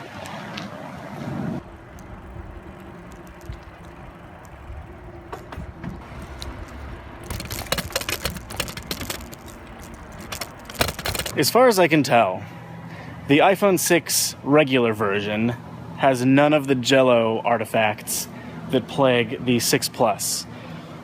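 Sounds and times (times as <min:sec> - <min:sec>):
bicycle road rumble: 0:00.0 - 0:11.5
phone mount rattling: 0:02.7 - 0:11.4.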